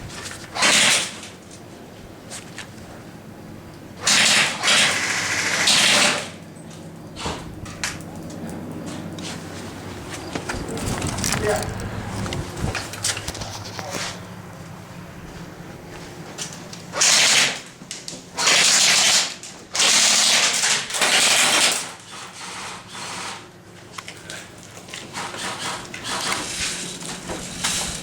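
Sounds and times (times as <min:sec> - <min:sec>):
airsoft guns firing bursts: 0:00.6 - 0:01.3, 0:04.0 - 0:06.4, 0:16.9 - 0:17.7, 0:18.4 - 0:23.4, 0:25.1 - 0:26.5.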